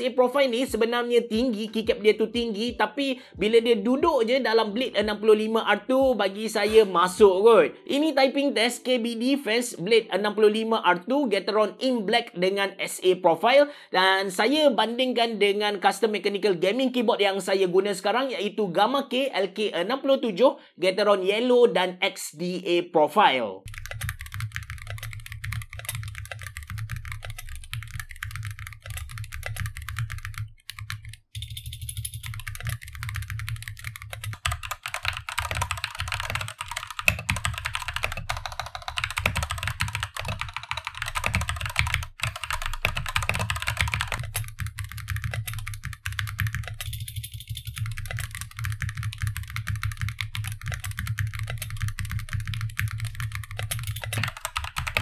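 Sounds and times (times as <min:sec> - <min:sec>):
mechanical keyboard typing: 0:23.7 - 0:55.0.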